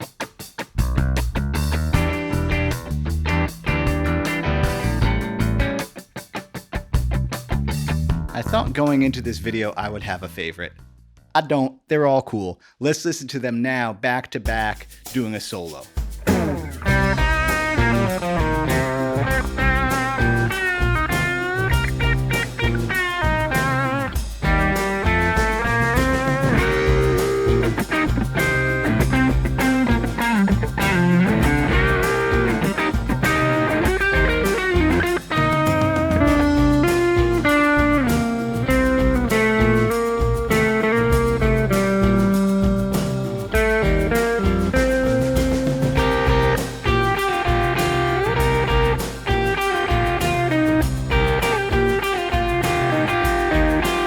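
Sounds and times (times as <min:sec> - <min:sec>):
backing track: 0:00.0 - 0:10.4, 0:14.5 - 0:54.0
bluesy electric guitar solo: 0:02.0 - 0:06.8, 0:16.3 - 0:54.0.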